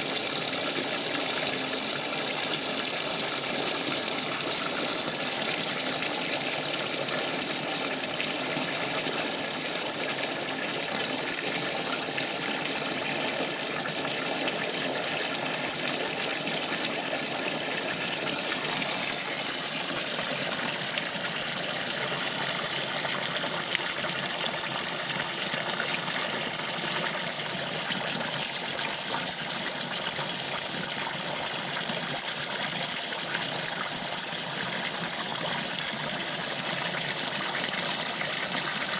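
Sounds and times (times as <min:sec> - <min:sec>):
water gushing in washing machine: 0:00.0 - 0:38.9.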